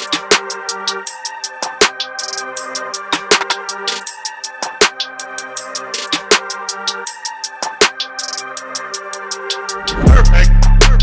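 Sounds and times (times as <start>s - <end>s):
fast hi-hat pattern: 0.0s - 11.0s
heavy kick drums: 9.9s - 11.0s.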